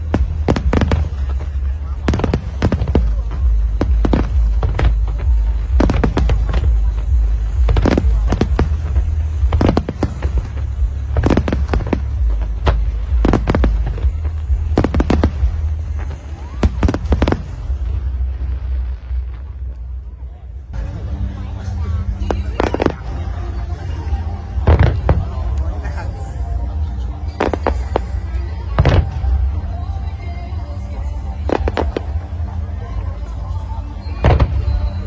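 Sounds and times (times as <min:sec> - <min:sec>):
fireworks bangs: 0:00.0 - 0:19.8, 0:22.3 - 0:23.4, 0:24.5 - 0:25.7, 0:27.3 - 0:30.0, 0:31.4 - 0:32.5, 0:34.1 - 0:35.0
low rumble: 0:00.0 - 0:35.0.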